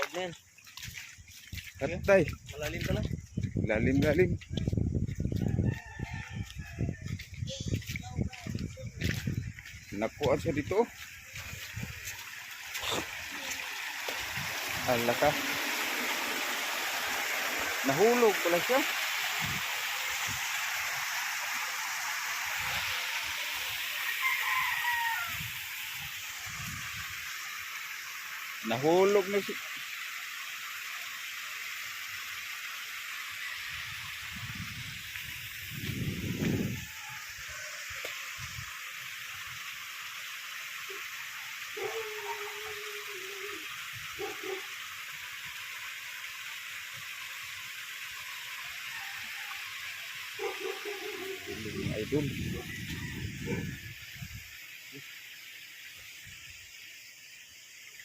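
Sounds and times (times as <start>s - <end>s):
rushing water: 0.0s - 58.0s
person calling out: 42.0s - 43.7s.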